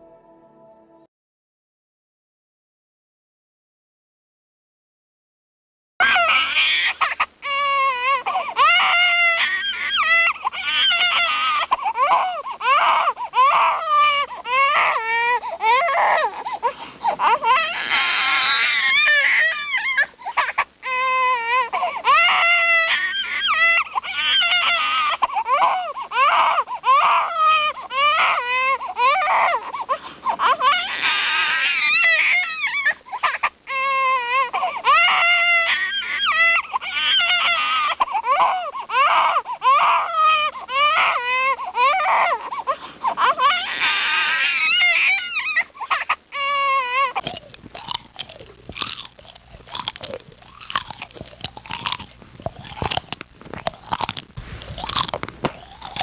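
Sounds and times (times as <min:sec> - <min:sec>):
infant crying: 0:06.0 - 0:49.1
infant screaming: 0:06.0 - 0:49.1.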